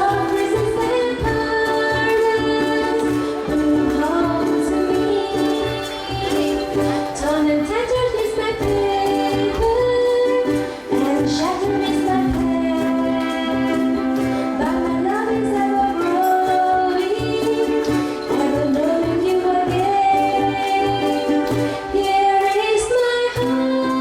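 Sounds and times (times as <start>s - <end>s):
ukuleles strumming: 0.0s - 24.0s.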